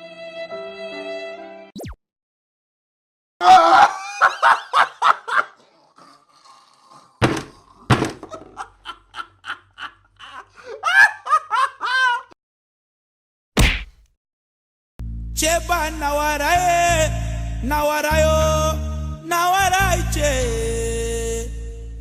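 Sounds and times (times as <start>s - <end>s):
burst of laughter: 3.4s - 6.0s, 8.3s - 12.4s
sudden thumps: 7.2s - 8.6s.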